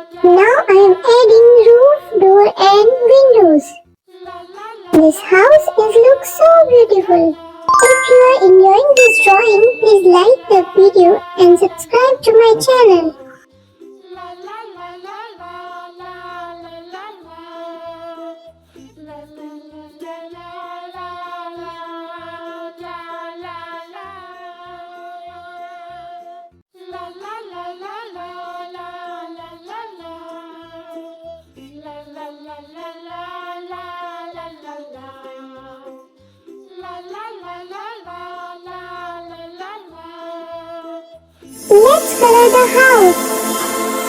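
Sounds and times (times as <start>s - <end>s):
children's music with steady beat: 0.0s - 3.8s, 5.0s - 13.3s, 41.4s - 44.0s.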